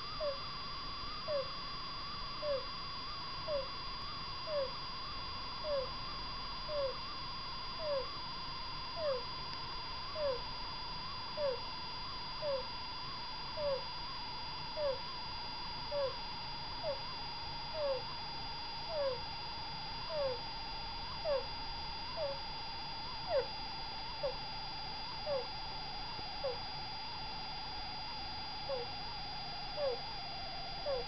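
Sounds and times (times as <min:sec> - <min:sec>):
degu squeaky breathing: 0:00.0 - 0:00.5, 0:01.2 - 0:01.6, 0:02.4 - 0:04.8, 0:05.6 - 0:07.2, 0:07.8 - 0:08.2, 0:09.0 - 0:09.3, 0:10.1 - 0:10.4, 0:11.4 - 0:11.6, 0:12.4 - 0:12.7, 0:13.6 - 0:13.9, 0:14.8 - 0:15.1, 0:15.9 - 0:16.2, 0:16.8 - 0:17.1, 0:17.7 - 0:18.1, 0:18.9 - 0:19.2, 0:20.0 - 0:20.4, 0:21.0 - 0:21.5, 0:22.1 - 0:22.4, 0:23.2 - 0:23.5, 0:25.2 - 0:25.5, 0:26.4 - 0:26.6, 0:28.7 - 0:29.0, 0:29.8 - 0:31.0
faint steady whine: 0:00.0 - 0:31.0.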